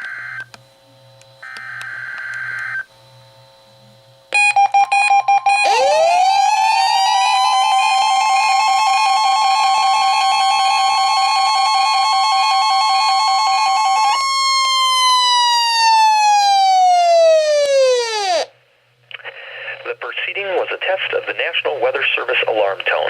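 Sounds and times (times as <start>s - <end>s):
loud steady alarm tone: 4.3s - 18.5s.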